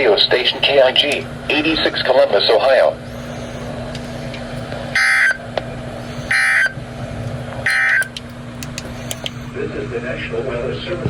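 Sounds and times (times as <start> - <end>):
steady low hum: 0.0 - 11.0
harsh digital data bursts: 4.9 - 6.8, 7.6 - 8.2.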